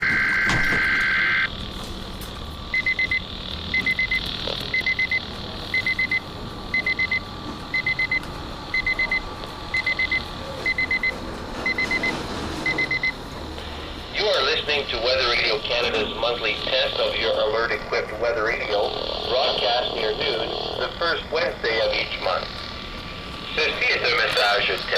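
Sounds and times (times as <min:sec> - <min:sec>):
radio alarm beeps: 0:00.0 - 0:01.5, 0:02.7 - 0:13.2, 0:23.5 - 0:24.9
warbling data burst: 0:14.1 - 0:24.9.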